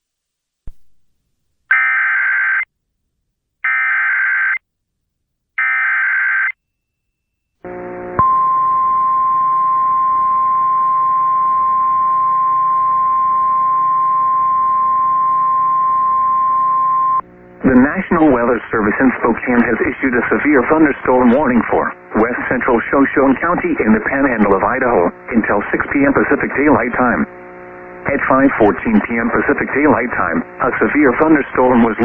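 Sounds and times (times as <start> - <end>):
steady warning alert tone: 8.2 - 17.9.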